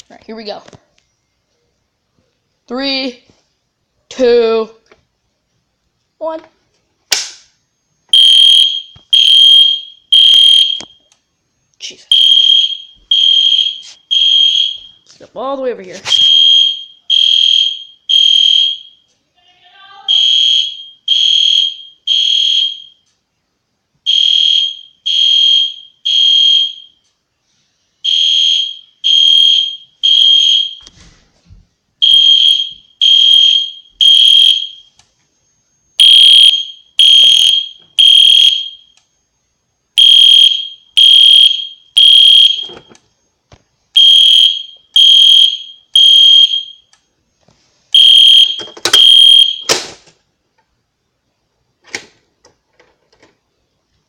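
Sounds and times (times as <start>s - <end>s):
alarm horn loud beeps: 36.0s - 38.8s, 48.0s - 49.6s.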